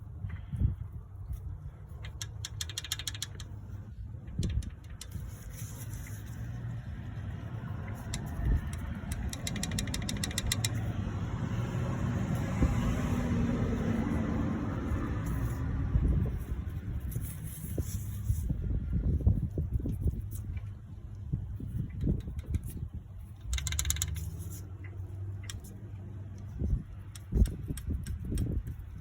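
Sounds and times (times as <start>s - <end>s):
engine low rumble: 0.0s - 29.0s
rapid valvetrain clacking: 1.9s - 6.4s, 7.9s - 11.7s, 21.7s - 25.8s.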